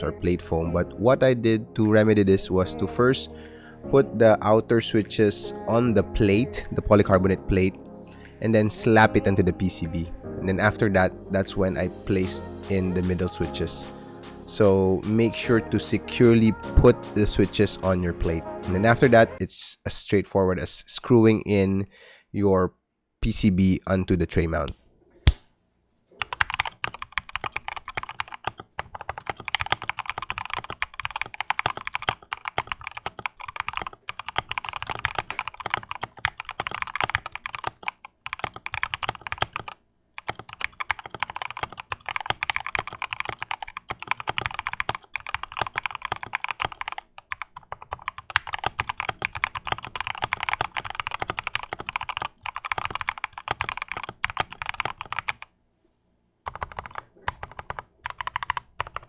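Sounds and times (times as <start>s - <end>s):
fast mechanical keyboard typing: 26.2s - 55.5s, 56.5s - 59.0s.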